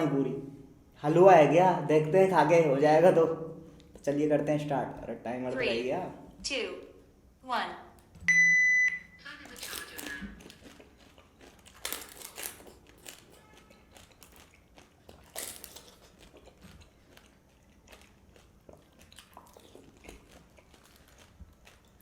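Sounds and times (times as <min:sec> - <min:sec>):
crisp food crunching: 0:09.5 - 0:22.0.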